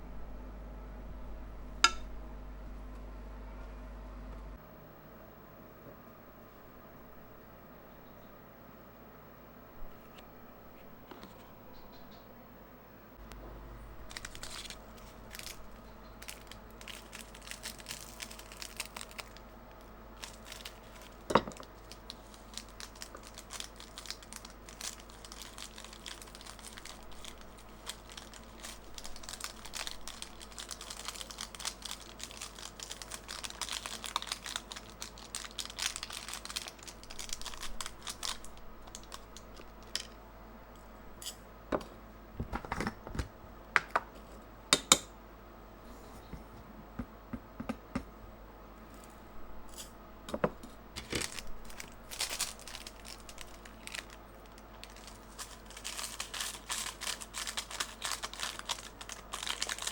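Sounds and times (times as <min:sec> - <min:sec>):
packaging crinkling and rustling: 0:14.0 - 0:40.2, 0:50.9 - 0:59.9.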